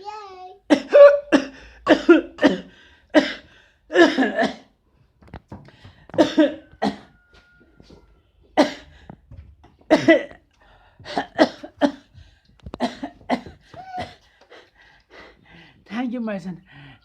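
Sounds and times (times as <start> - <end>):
man coughing hard: 0.7 - 4.7, 6.2 - 7.1, 8.6 - 8.9, 9.9 - 10.4, 11.1 - 12.1, 12.8 - 14.2.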